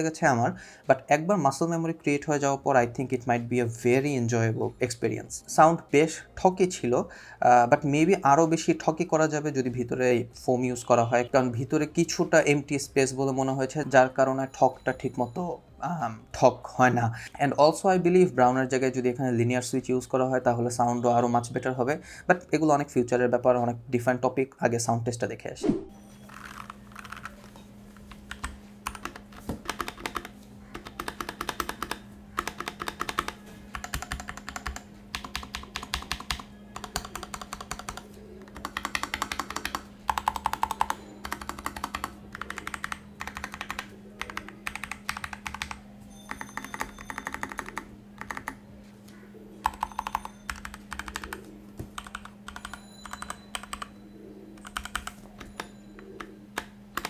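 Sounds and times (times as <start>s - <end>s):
mechanical keyboard typing: 26.3s - 48.6s, 49.6s - 53.9s, 54.6s - 57.0s.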